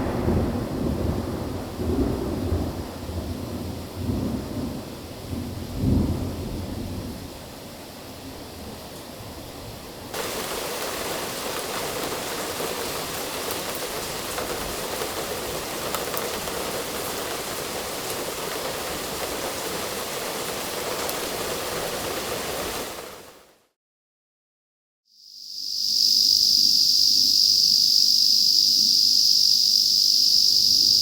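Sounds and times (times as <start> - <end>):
heavy rain downpour: 0.0 - 23.6.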